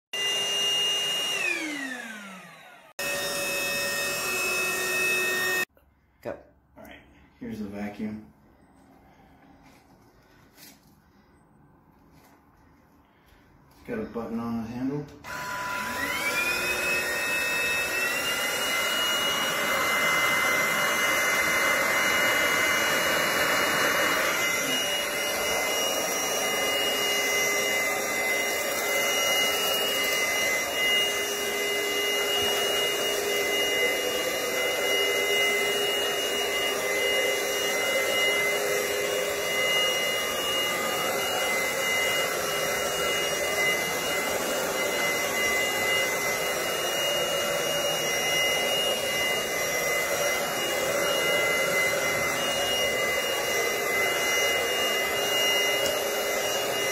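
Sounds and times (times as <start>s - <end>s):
vacuum cleaner motor whine: 0.1s - 5.7s, 13.1s - 56.9s.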